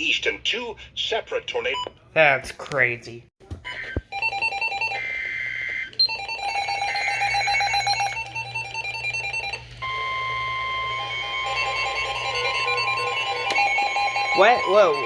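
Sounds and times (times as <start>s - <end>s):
steady alarm tone: 3.7s - 15.0s.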